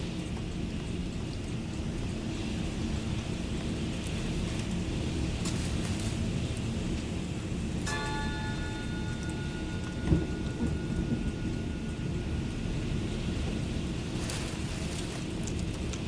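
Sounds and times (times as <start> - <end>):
heavy rain: 0.0 - 16.0
low rumbling thunder: 9.5 - 14.2.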